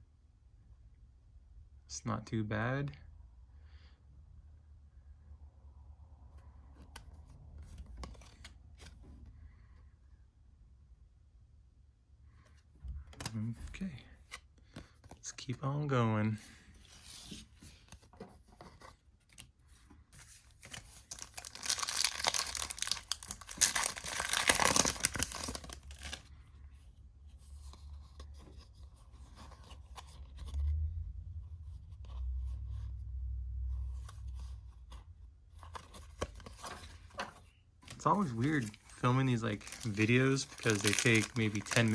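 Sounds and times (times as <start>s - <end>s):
wrapper tearing and crinkling: 20.7s - 26.2s, 38.2s - 41.9s
low rumble: 30.4s - 34.2s.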